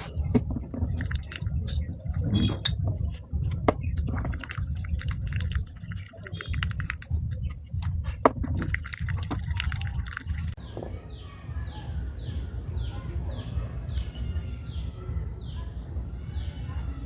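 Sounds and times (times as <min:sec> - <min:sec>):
slime squelching and clicking: 0:00.2 - 0:10.6.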